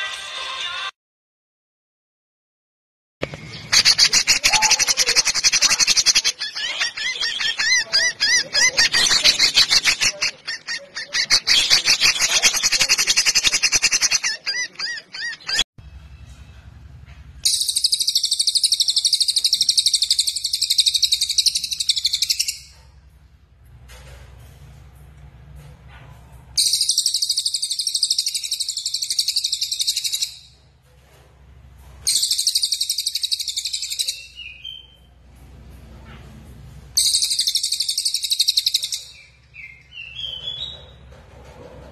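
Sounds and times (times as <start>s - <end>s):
songbird chattering song: 3.4s - 15.6s, 17.5s - 22.7s, 26.6s - 30.4s, 32.1s - 35.0s, 37.0s - 40.8s.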